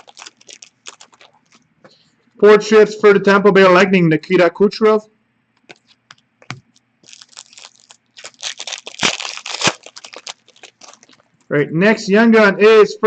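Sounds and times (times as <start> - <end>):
wrapper torn open and crinkled: 0.0 - 1.6, 6.7 - 11.5.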